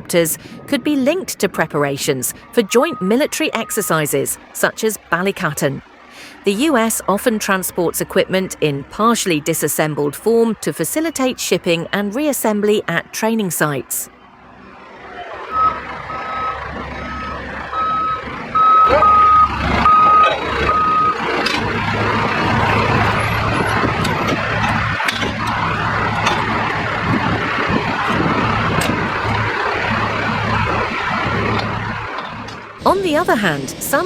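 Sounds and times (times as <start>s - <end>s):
heavy vehicle engine running: 0.0s - 34.0s
reversing alarm beeping: 0.6s - 5.8s, 6.4s - 14.1s, 15.5s - 21.3s.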